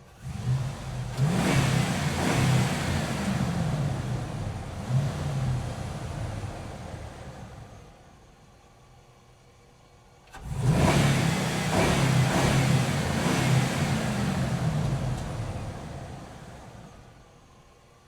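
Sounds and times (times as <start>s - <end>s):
motorcycle engine revving: 0.2s - 7.8s, 10.4s - 17.1s.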